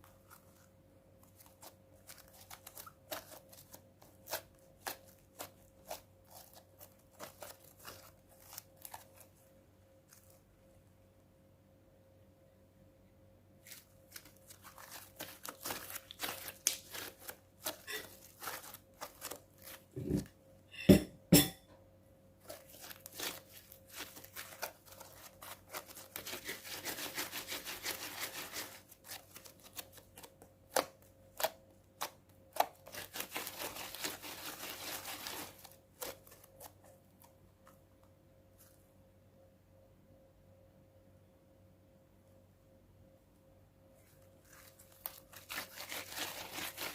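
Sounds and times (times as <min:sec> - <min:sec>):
slime crackling: 0:00.0 - 0:09.4, 0:13.6 - 0:20.2, 0:22.4 - 0:36.8, 0:44.5 - 0:46.9.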